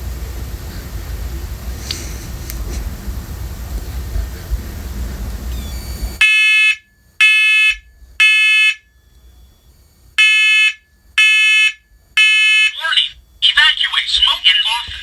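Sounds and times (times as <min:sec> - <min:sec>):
low hiss and rumble: 0:00.0 - 0:15.0
smoke alarm shrill beeps: 0:05.5 - 0:15.0.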